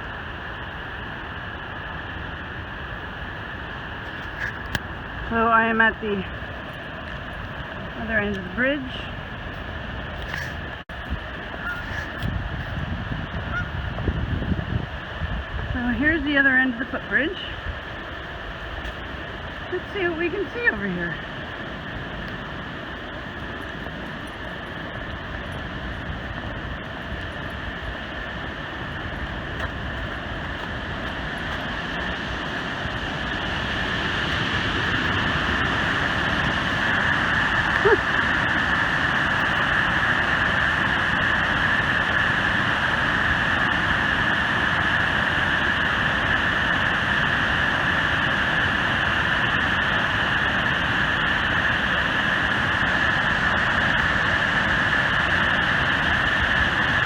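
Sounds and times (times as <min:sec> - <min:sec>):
waterfall roaring: 0:13.3 - 0:57.0.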